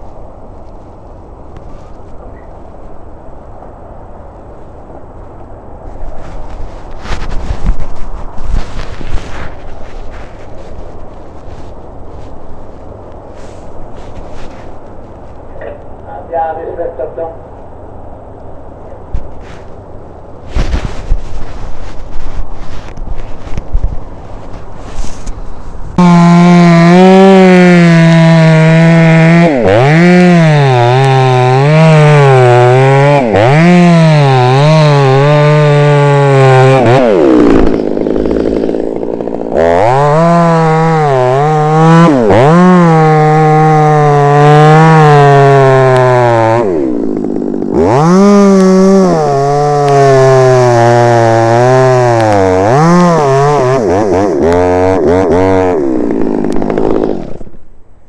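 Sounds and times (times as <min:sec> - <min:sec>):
chainsaw cutting wood: 0:06.1 - 0:12.4, 0:13.4 - 0:15.1, 0:20.5 - 0:57.7.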